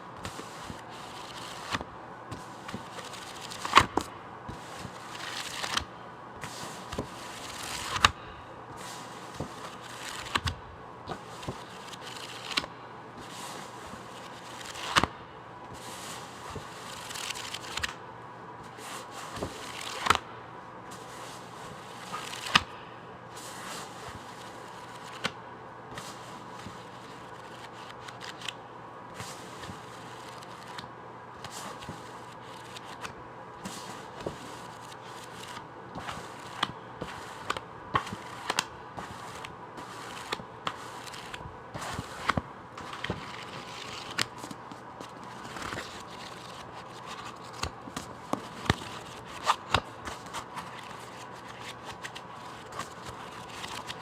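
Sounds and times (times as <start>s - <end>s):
faint steady hum: 0.0s - 54.0s
paper rustling: 0.2s - 18.0s, 18.6s - 20.2s, 20.9s - 54.0s
taps on book covers: 1.6s - 7.2s, 9.3s - 11.7s, 18.7s - 20.2s, 32.7s - 43.4s, 47.1s - 53.2s.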